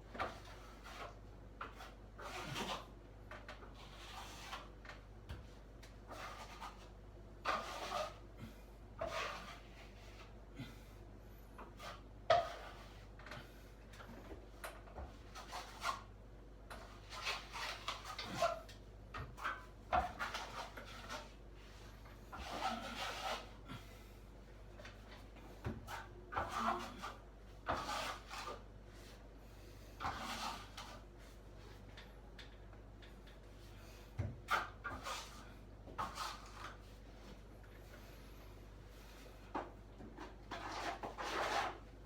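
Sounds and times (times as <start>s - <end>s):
filling knife scraping filler: 30.0s - 31.0s.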